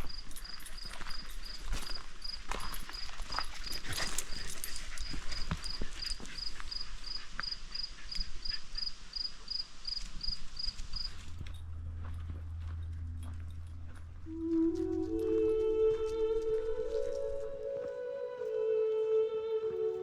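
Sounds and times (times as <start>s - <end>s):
cricket chirping: 0.0s - 11.7s
steady low hum: 10.4s - 16.4s.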